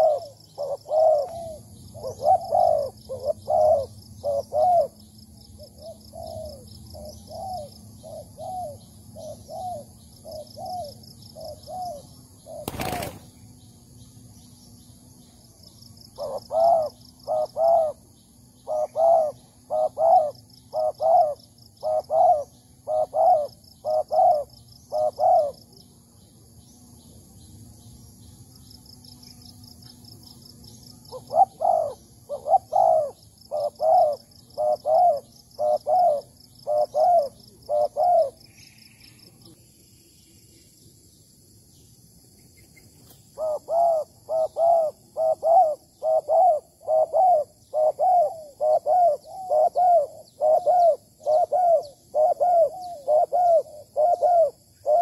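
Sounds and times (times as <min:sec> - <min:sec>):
doves cooing: 0:00.0 - 0:05.0, 0:05.6 - 0:13.2, 0:16.2 - 0:25.6, 0:31.1 - 0:38.4, 0:43.3 - 0:55.0.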